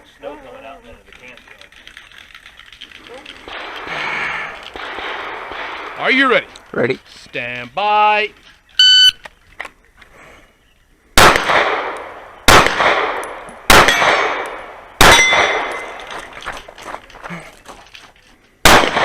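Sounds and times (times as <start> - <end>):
pistol shots: 3.5 - 4.0, 4.7 - 6.4, 11.2 - 16.3, 18.6 - 19.0
steel target plates ringing: 15.0 - 16.1.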